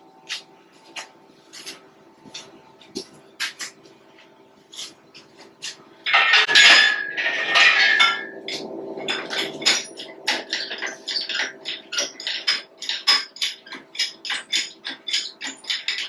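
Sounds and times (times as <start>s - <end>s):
metal scraping with ringing tone: 6.1s - 16.0s
metal tools clanking: 6.1s - 16.0s.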